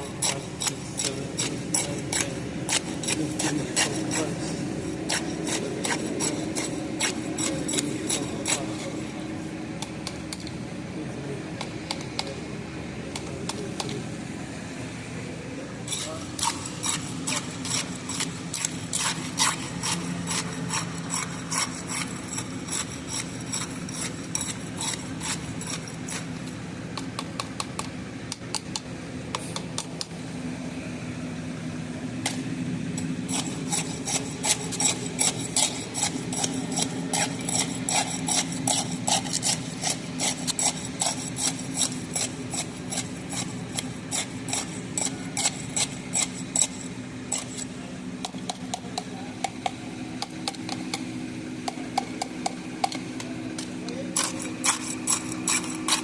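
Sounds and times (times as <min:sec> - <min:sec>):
metal tools tapping and scraping: 0:00.0 - 0:09.0, 0:15.9 - 0:26.3, 0:33.0 - 0:56.0
low engine drone: 0:00.0 - 0:56.0.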